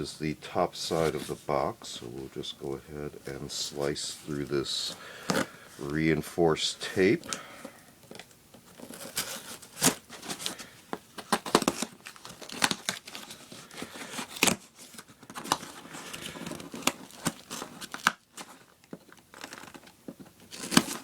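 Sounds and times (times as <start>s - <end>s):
cardboard scraping and crinkling: 0.8s - 6.2s, 8.6s - 21.0s
packing tape sliced and torn: 8.7s - 10.6s, 11.2s - 18.6s, 19.3s - 21.0s.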